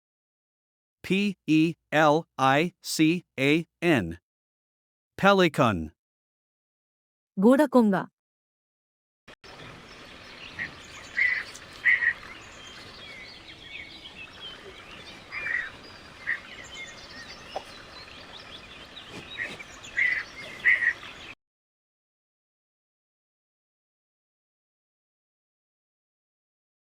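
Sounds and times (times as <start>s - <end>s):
small bird chirps: 9.9s - 21.4s.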